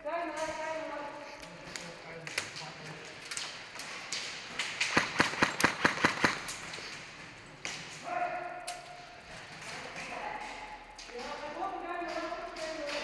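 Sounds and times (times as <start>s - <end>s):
airsoft gun shots: 4.8s - 6.6s.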